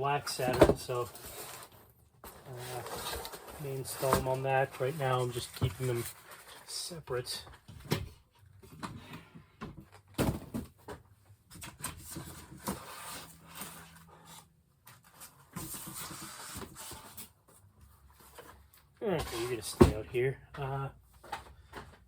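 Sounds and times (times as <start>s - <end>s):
knocks and clicks of boxed parts: 0.3s - 1.2s, 7.6s - 12.9s, 19.2s - 22.0s.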